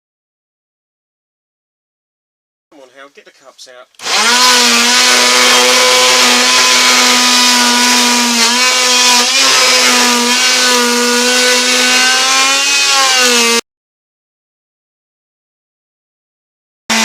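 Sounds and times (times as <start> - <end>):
electric power tool cutting wood: 4.0 - 13.6.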